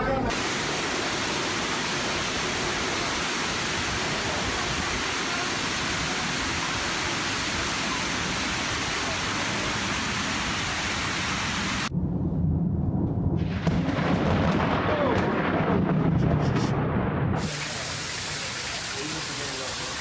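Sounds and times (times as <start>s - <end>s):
heavy rain pouring: 0.3s - 11.9s, 17.4s - 20.0s.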